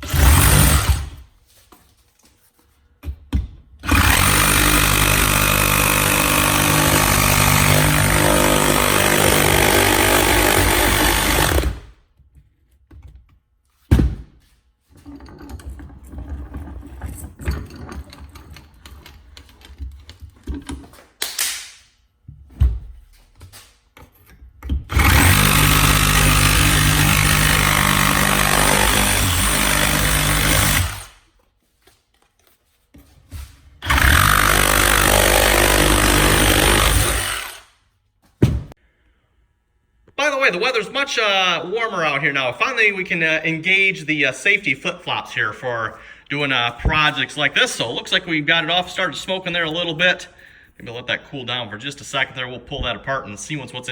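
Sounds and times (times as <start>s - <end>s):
reciprocating saw cutting metal: 0.0s - 1.2s, 3.8s - 11.9s, 24.9s - 31.2s, 33.8s - 37.7s.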